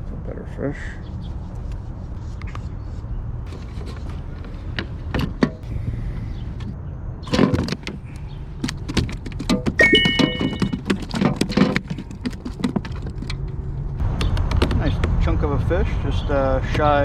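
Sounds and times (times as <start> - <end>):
fishing gear knocking and rattling: 8.6 - 13.6
high beep-like tone: 9.8 - 10.7.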